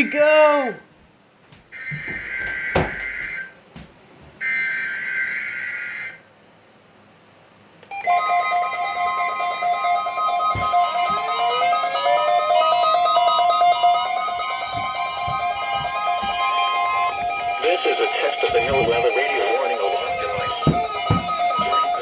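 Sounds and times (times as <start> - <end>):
steady warning alarm tone: 7.9 - 22.0
shrill digital data tones: 10.2 - 22.0
pulsing music-like tones: 11.3 - 22.0.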